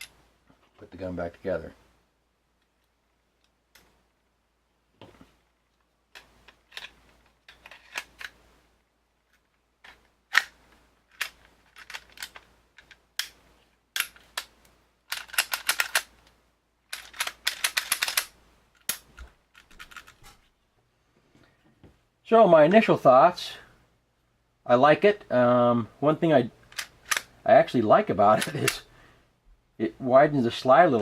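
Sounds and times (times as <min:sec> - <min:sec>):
pistol parts clicking and snapping: 0:09.8 - 0:13.4, 0:14.0 - 0:20.2, 0:26.7 - 0:27.3, 0:28.4 - 0:28.8.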